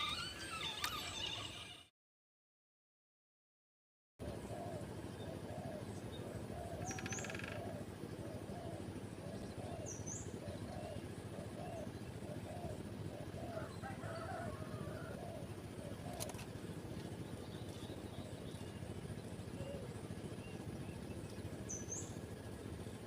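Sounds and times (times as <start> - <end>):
bird cooing: 4.2 - 16.5, 19.5 - 20.6
bird chatter: 5.5 - 22.2
high bird chirps: 6.8 - 7.6.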